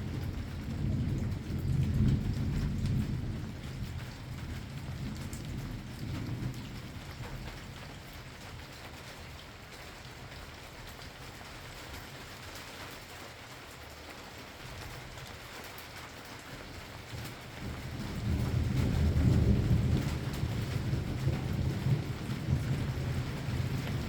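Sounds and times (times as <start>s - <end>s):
thunder rumble: 0.0s - 8.0s, 17.1s - 24.0s
steady rain: 0.0s - 24.0s.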